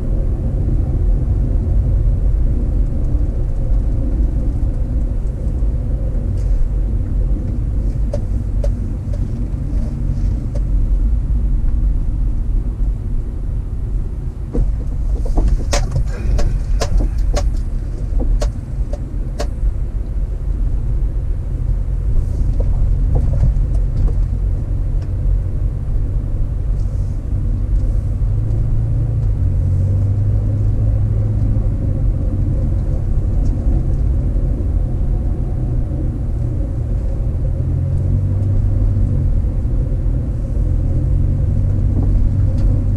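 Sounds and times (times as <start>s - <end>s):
car road rumble: 0.0s - 42.9s
sharp clicks and knocks: 7.4s - 10.7s, 14.5s - 19.6s, 22.5s - 24.3s.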